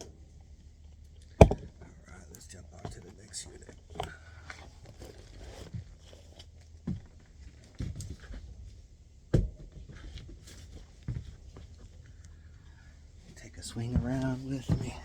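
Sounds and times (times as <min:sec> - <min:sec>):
low steady hum: 0:00.0 - 0:15.0
thumps and knocks of footsteps: 0:02.8 - 0:12.2, 0:13.4 - 0:15.0.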